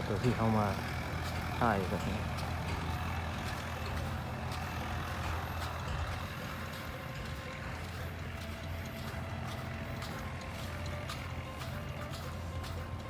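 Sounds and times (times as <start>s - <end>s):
traffic engine rumble: 0.0s - 13.0s.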